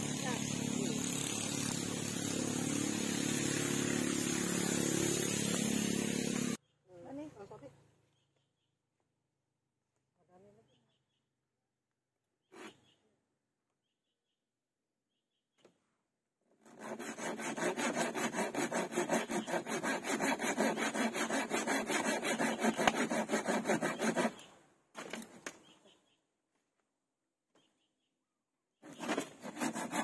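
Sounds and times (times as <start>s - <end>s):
hand saw cutting wood: 0.0s - 6.6s, 16.5s - 25.5s, 28.8s - 30.0s.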